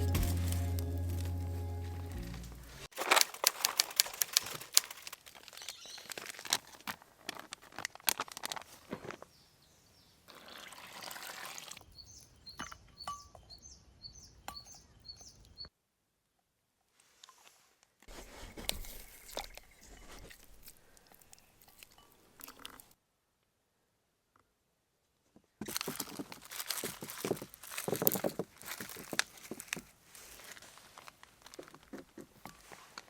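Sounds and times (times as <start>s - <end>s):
background music: 0.0s - 2.9s
sharp irregular cracks and clicks: 3.0s - 8.5s
small bird chirping: 11.8s - 15.7s.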